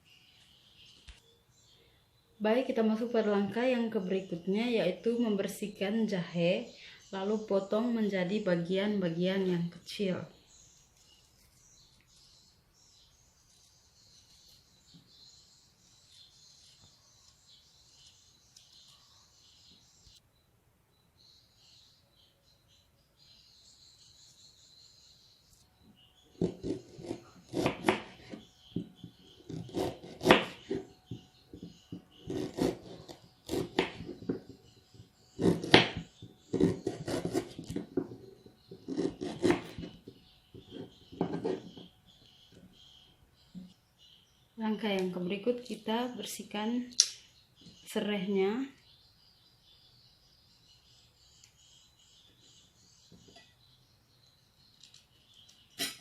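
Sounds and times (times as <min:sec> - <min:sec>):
knife cutting on wooden board: 0:26.4 - 0:28.5, 0:29.4 - 0:31.0, 0:31.6 - 0:34.5, 0:35.4 - 0:38.2, 0:38.8 - 0:40.0, 0:40.6 - 0:41.8.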